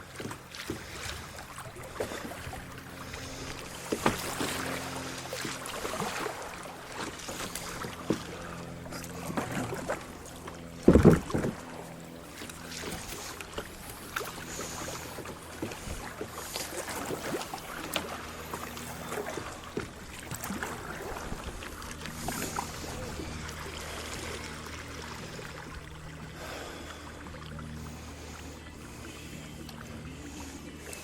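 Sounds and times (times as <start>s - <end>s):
paddle strokes splashing: 0.0s - 31.0s
water moving past hull: 0.0s - 31.0s
knocks on kayak: 10.8s - 11.6s.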